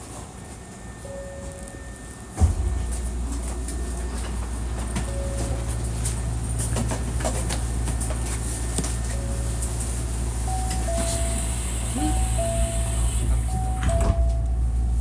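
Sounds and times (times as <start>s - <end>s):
train equipment humming: 0.0s - 15.0s
two-note descending door chime: 10.5s - 14.8s.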